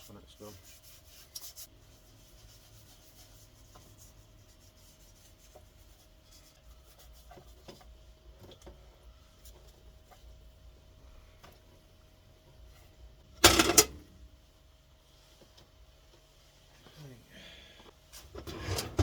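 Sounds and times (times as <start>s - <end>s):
faint rubbing on wood: 0.0s - 8.1s.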